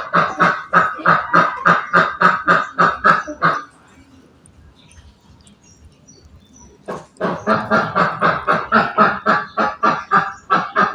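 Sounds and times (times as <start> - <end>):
rapid honking calls: 0.0 - 3.8, 6.9 - 10.9.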